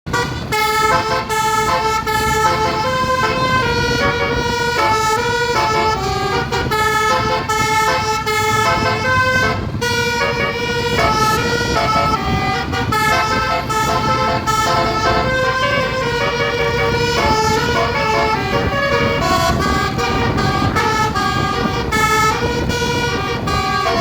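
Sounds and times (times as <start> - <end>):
multi-trumpet air horn melody: 0.1 - 24.0
low rumble: 8.5 - 24.0.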